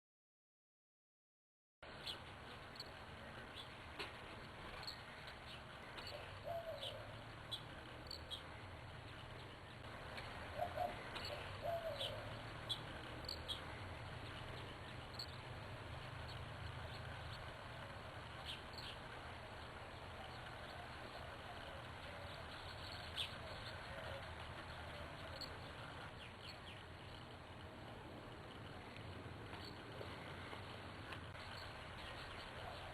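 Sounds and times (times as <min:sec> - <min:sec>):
faint low hum: 0:01.8 - 0:32.9
small birds chirping: 0:01.9 - 0:32.9
lower bird calls: 0:04.7 - 0:09.8, 0:10.4 - 0:27.4.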